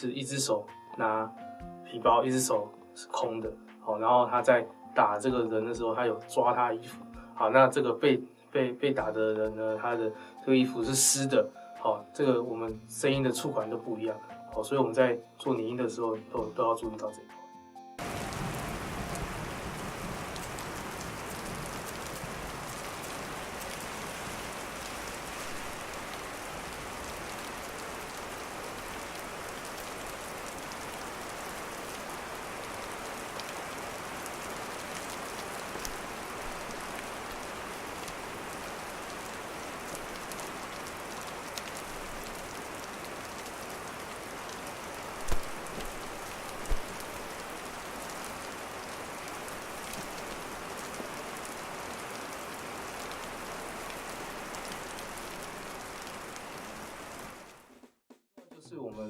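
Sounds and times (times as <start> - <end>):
heavy rain: 18.0 - 57.7.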